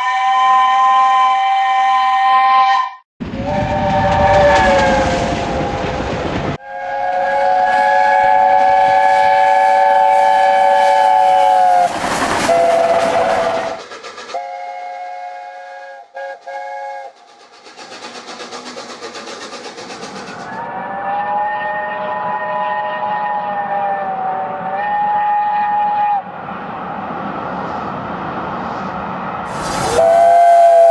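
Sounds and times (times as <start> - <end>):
locomotive whistle chord: 0.0 - 5.7, 6.6 - 17.5, 20.5 - 26.2, 29.5 - 30.9
short burst of noise: 29.5 - 30.9.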